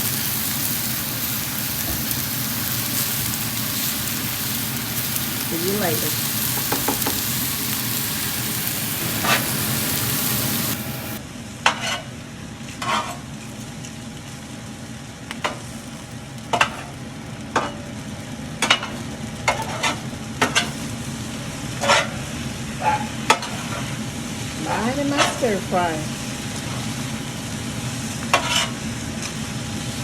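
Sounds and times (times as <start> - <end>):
vegetables sizzling in a pan: 0.0 - 11.2, 18.2 - 30.0
utensil clacking against pan: 1.2 - 10.5.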